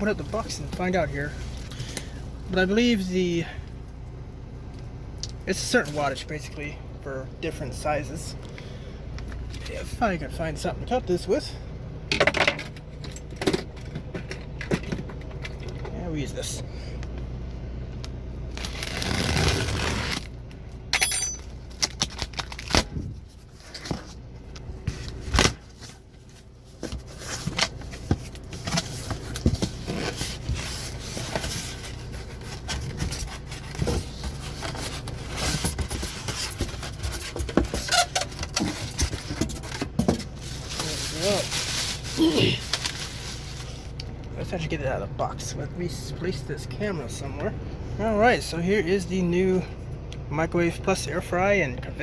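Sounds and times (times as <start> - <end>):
cardboard crackling: 18.6 - 20.3, 26.7 - 44.0.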